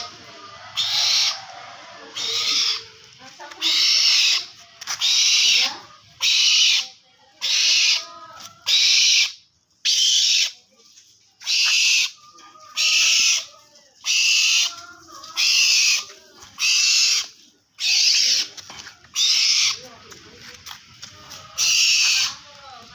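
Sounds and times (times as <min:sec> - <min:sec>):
owl hissing: 0:00.0 - 0:10.6, 0:11.4 - 0:19.9, 0:21.2 - 0:22.4.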